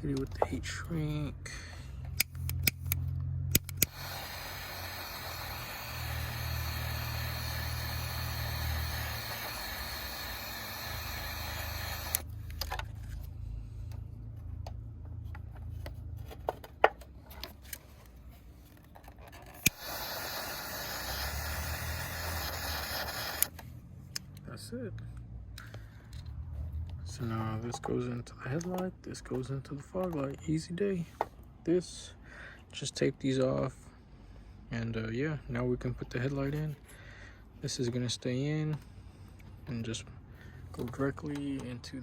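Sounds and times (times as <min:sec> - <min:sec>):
sharp clicks: 0:02.1 - 0:12.7, 0:19.6 - 0:24.4
torch flame hissing: 0:03.6 - 0:12.3, 0:19.6 - 0:23.6.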